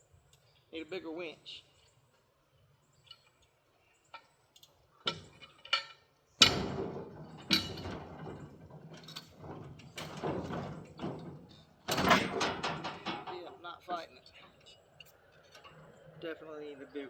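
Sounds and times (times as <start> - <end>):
metal clicks and knocks: 4.1 - 15.9
loud metal clank: 6.4 - 13.5.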